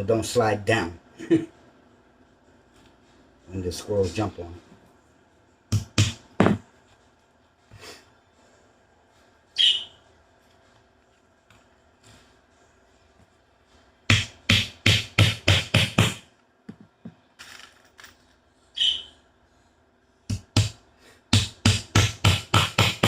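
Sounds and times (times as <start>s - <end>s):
hammer driving nail into wood: 14.1s - 16.2s, 20.3s - 23.0s.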